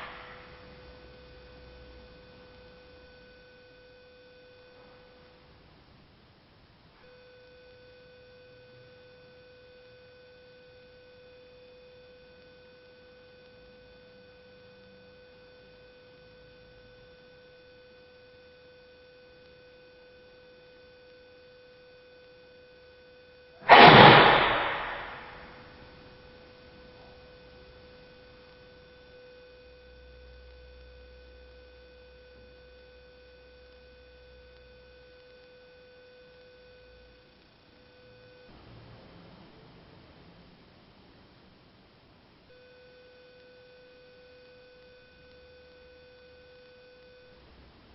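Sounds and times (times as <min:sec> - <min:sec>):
sudden loud burst: 0:00.0 - 0:00.6, 0:23.6 - 0:25.8
faint steady hum: 0:00.0 - 0:47.9.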